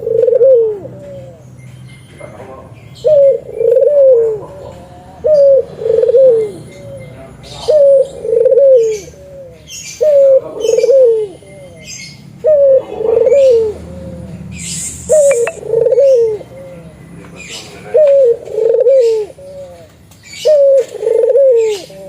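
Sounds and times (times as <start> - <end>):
dove cooing: 0.0 - 1.4, 3.0 - 14.4, 15.1 - 22.0
faint high chirps: 15.1 - 15.6.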